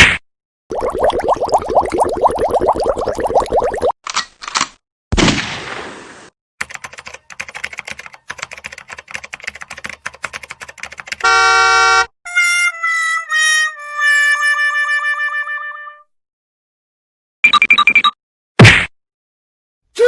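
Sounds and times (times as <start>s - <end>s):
fast keyboard typing: 6.6s - 11.3s
buzzy horn-like tone: 11.2s - 16.0s
musical notes: 12.3s - 16.0s.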